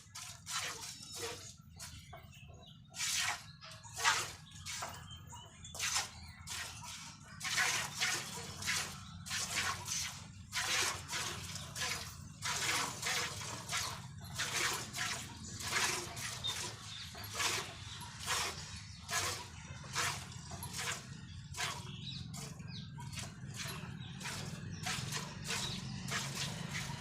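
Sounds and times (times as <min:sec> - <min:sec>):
milk squirting into a pail: 0:00.0 - 0:01.6, 0:05.8 - 0:21.9, 0:23.1 - 0:27.0.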